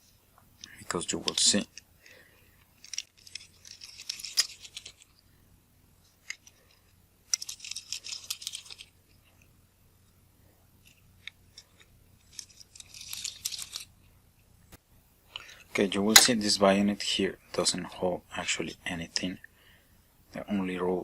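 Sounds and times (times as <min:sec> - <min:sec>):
light clicks of small parts: 0:00.4 - 0:05.3, 0:06.1 - 0:10.2, 0:10.8 - 0:16.3.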